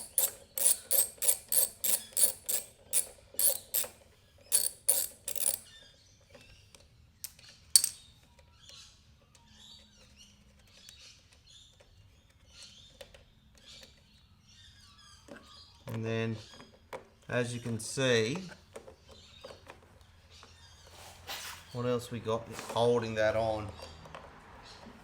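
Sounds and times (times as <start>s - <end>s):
socket ratchet clicking: 0.0s - 5.8s, 7.3s - 8.1s
faint handling sounds: 15.2s - 25.0s.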